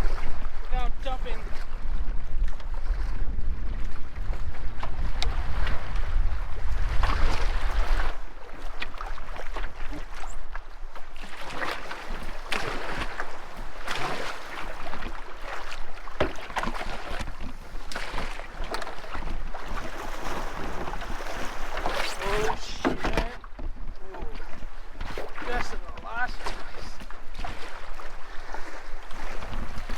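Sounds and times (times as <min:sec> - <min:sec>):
wind rumble on microphone: 0:00.0 - 0:16.0
canoe paddle strokes: 0:00.0 - 0:29.9
waves slapping against hull: 0:00.0 - 0:29.9
splashes and knocks: 0:06.9 - 0:29.9.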